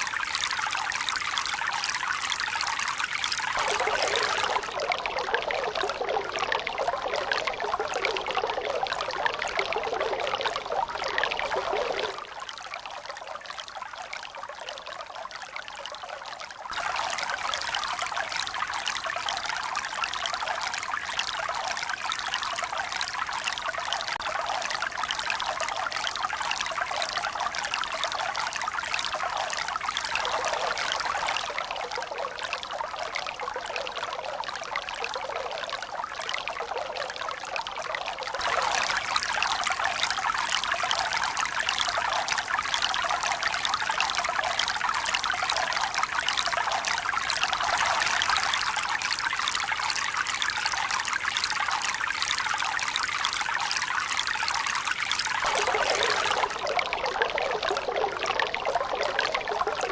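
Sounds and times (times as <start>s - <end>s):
running water splashing: 3.0s - 4.8s, 55.3s - 58.0s.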